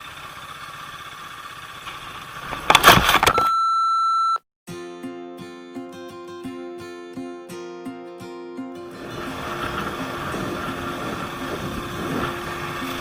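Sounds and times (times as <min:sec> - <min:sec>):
motorcycle engine running: 0:00.0 - 0:02.8, 0:09.0 - 0:13.0
plucked guitar music: 0:04.7 - 0:13.0.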